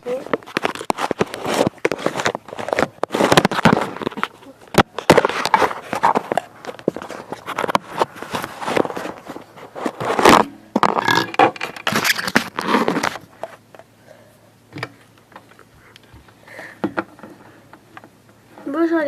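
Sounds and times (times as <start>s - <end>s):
plastic toys scraping on surface: 0.3s - 4.4s, 5.1s - 13.2s.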